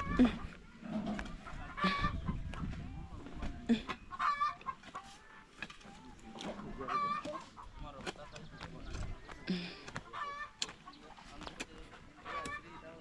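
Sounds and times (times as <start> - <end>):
chicken calls: 0.0 - 7.8, 8.5 - 13.0
chickens clucking: 0.0 - 13.0.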